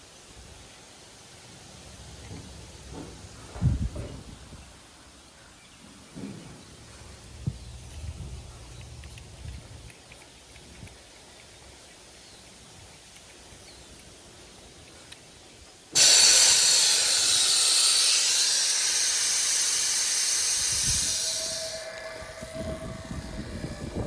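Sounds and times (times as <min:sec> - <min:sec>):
pressurised gas hissing: 0:15.9 - 0:24.0.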